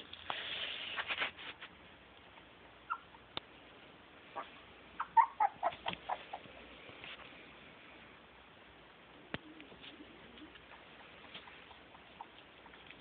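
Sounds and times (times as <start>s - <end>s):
soft rustle: 0.0s - 13.0s
small animal squeaky chirps: 4.4s - 6.4s.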